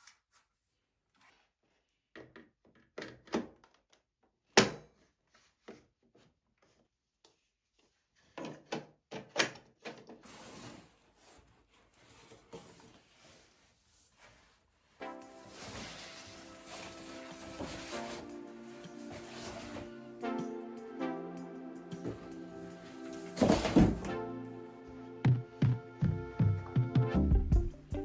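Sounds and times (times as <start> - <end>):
soft rubbing and rustling: 10.3 - 19.9.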